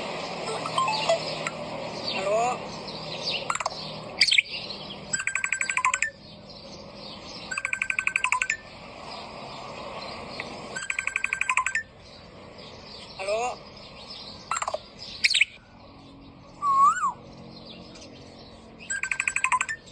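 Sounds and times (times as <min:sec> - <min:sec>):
parrot mimicking a ringtone: 0:00.5 - 0:01.3, 0:05.1 - 0:06.2, 0:07.5 - 0:08.6, 0:10.8 - 0:11.9, 0:18.9 - 0:19.9.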